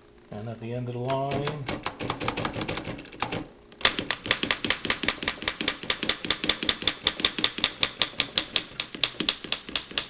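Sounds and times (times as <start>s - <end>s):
manual typewriter clattering: 1.0s - 10.0s.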